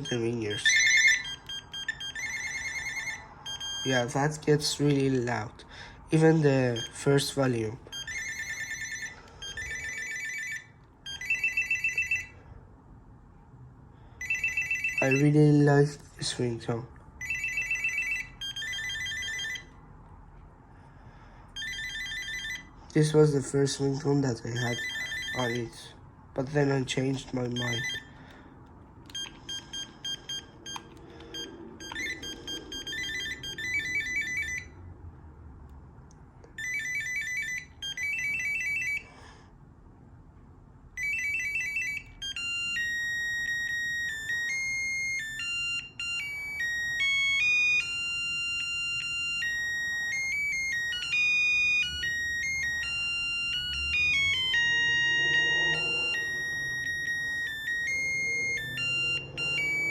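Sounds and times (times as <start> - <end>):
electronic trilling ring: 0.0 - 4.8, 6.6 - 12.3, 17.2 - 19.7, 21.6 - 22.7, 24.6 - 25.8, 27.5 - 28.1, 29.1 - 34.7, 41.0 - 59.9
beeping ringtone melody: 0.0 - 5.4, 6.2 - 12.4, 14.2 - 15.4, 17.2 - 19.8, 21.6 - 22.8, 24.5 - 25.8, 27.2 - 28.3, 29.1 - 34.8, 36.6 - 39.1, 41.0 - 59.9.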